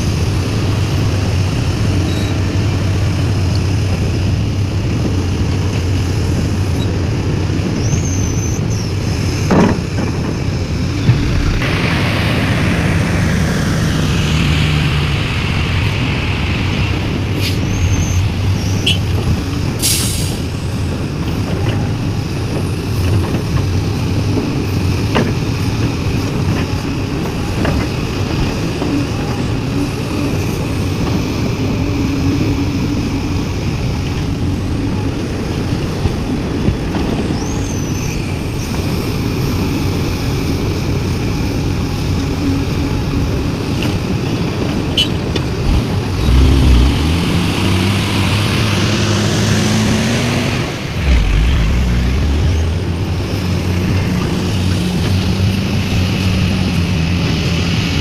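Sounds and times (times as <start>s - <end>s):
heavy diesel engines running: 0.0s - 58.0s.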